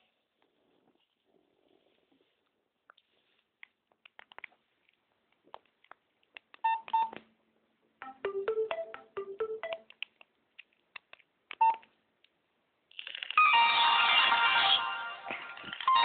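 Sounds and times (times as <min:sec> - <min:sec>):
electronic ringtone melody: 0:08.0 - 0:09.9, 0:13.4 - 0:16.0.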